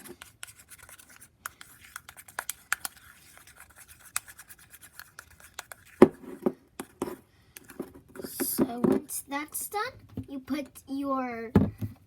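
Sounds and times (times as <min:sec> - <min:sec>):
utensil scraping a bowl: 0:00.0 - 0:07.2.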